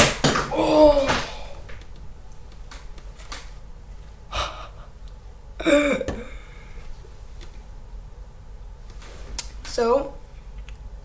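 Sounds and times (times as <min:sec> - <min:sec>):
person gasping: 0:00.5 - 0:01.7, 0:04.3 - 0:05.0, 0:05.6 - 0:06.8.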